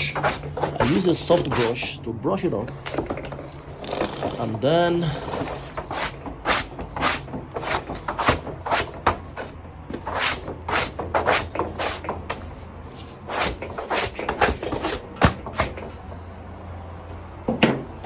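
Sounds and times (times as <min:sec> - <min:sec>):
brush sweeping across board: 0:00.0 - 0:01.9, 0:05.2 - 0:12.4, 0:13.0 - 0:15.9.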